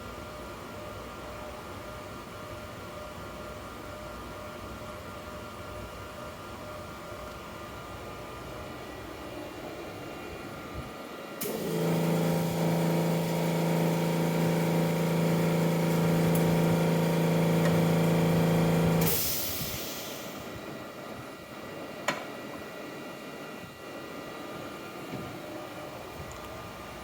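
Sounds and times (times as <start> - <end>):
air hissing: 17.6 - 20.6.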